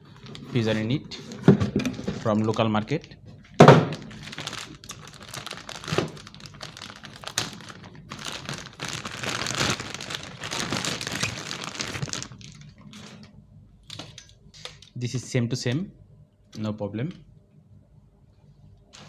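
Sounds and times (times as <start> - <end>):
packaging crinkling and rustling: 0.0 - 15.0.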